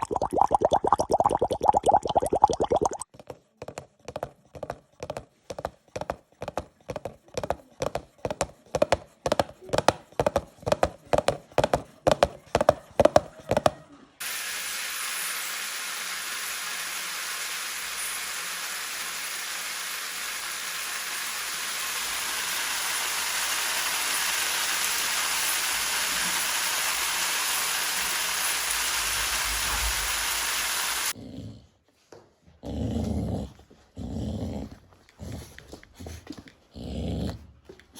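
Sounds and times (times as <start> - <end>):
horse hooves clip-clopping: 3.1 - 13.8
steady hiss: 14.2 - 31.1
dog growling: 31.2 - 37.6.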